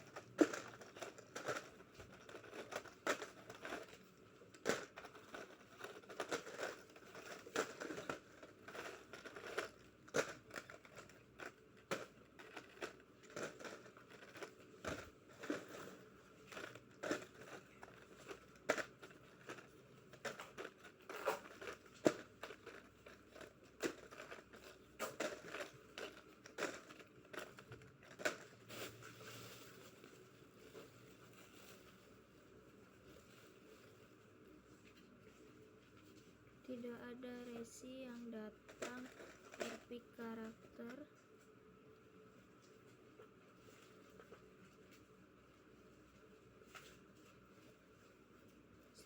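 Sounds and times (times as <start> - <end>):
small plastic clicks and crackles: 0.0 - 32.0, 37.3 - 41.2
plastic packaging crinkling: 0.0 - 36.3, 37.2 - 41.0.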